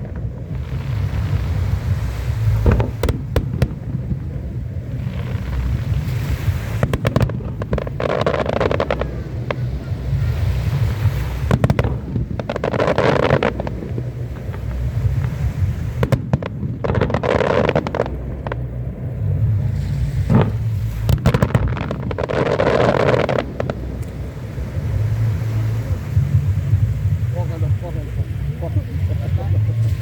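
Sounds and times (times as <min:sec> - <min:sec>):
fireworks cracking and banging: 0:00.0 - 0:18.7, 0:20.2 - 0:23.8
fireworks hissing and crackling: 0:00.0 - 0:18.8, 0:19.5 - 0:24.1
steady low rumble: 0:00.0 - 0:30.0.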